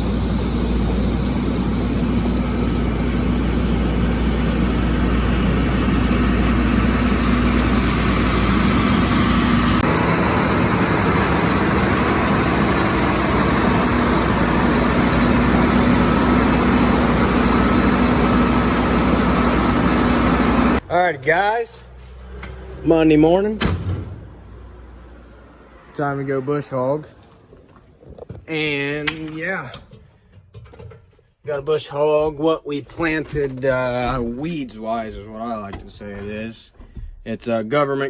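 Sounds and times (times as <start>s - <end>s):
pressure washer pump hum: 0.0s - 20.8s.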